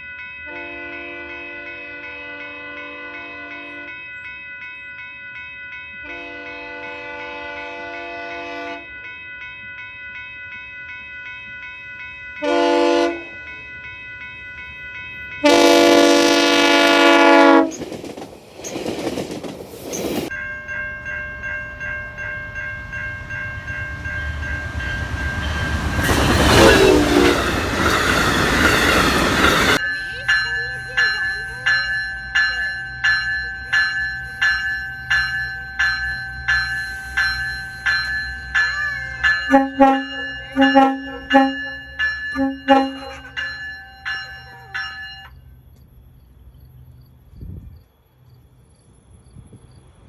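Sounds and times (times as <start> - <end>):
locomotive air horn: 0.5 - 3.9, 6.0 - 8.8, 12.4 - 13.2, 15.4 - 17.8, 26.5 - 27.7, 39.5 - 41.7, 42.4 - 43.2
train rumbling past: 12.4 - 50.0.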